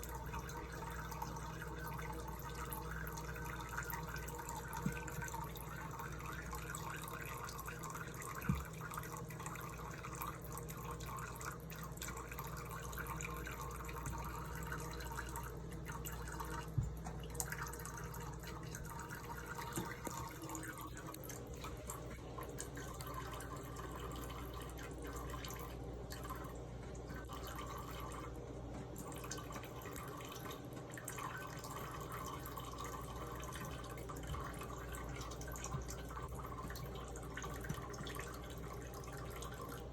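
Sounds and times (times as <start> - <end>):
tap water trickling into sink: 0.0 - 39.9.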